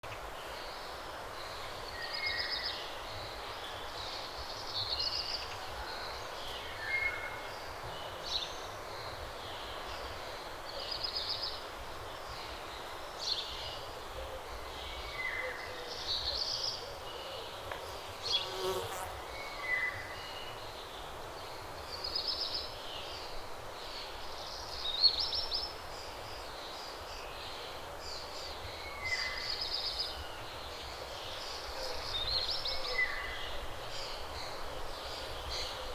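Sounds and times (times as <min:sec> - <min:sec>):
background hiss: 0:00.0 - 0:35.9.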